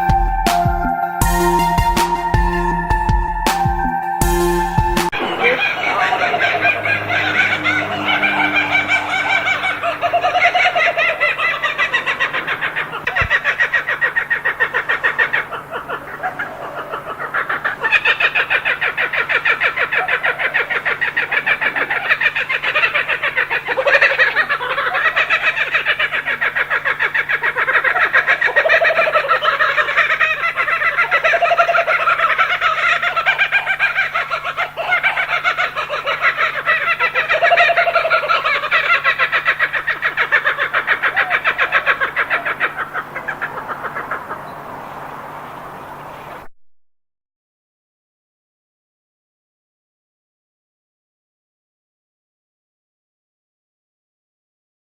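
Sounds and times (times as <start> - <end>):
kookaburras laughing calls: 5.0 - 46.4.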